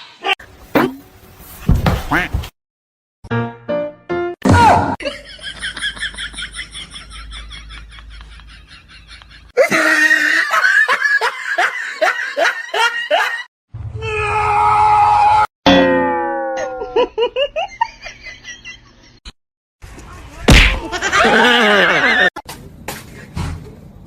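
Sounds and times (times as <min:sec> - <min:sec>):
person laughing: 0:05.0 - 0:13.5, 0:16.6 - 0:18.8, 0:20.8 - 0:22.3.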